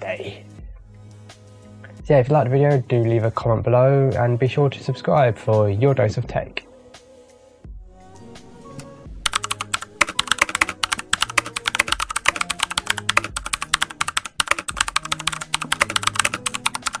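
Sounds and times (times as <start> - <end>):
mechanical keyboard typing: 8.2 - 17.0.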